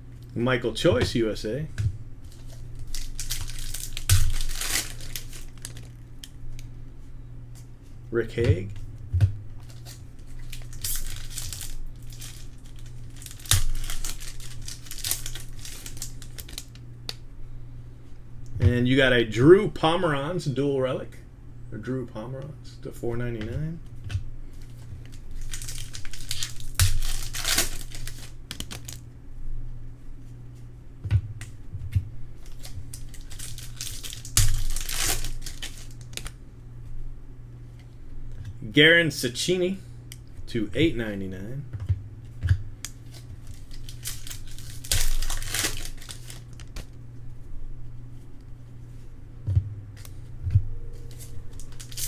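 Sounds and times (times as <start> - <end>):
low electrical hum: 0.0 - 52.0
card pack wrappers crinkling: 2.3 - 6.4, 9.6 - 16.8, 24.6 - 29.0, 32.4 - 36.4, 42.9 - 46.9, 51.0 - 52.0.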